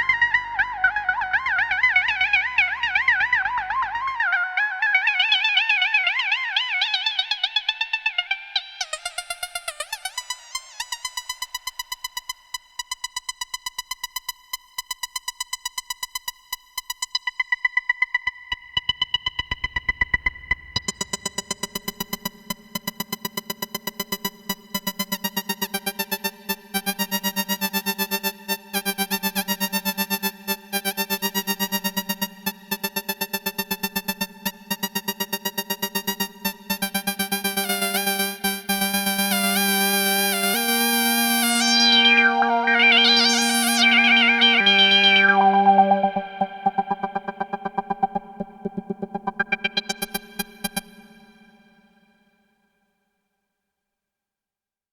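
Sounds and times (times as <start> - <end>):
synthesizer sustained note: 0.0 - 4.8, 39.3 - 50.8.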